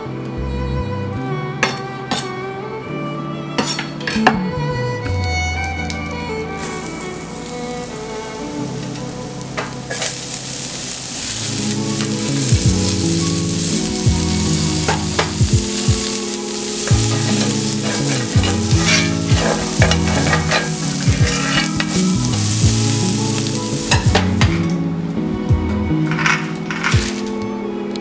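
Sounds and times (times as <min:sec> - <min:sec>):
food sizzling in a pan: 0:06.6 - 0:24.6, 0:26.8 - 0:27.2.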